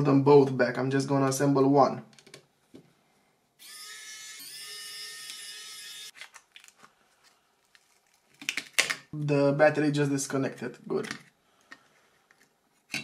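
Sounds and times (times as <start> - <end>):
small electric motor whining: 3.6 - 6.1.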